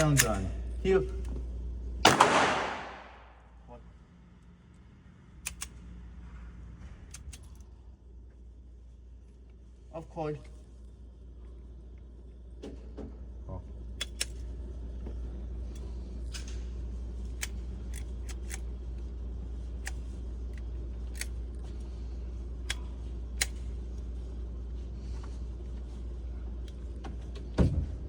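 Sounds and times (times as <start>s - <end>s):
steady low hum: 0.0s - 28.0s
sharp metallic clicks: 5.4s - 5.8s.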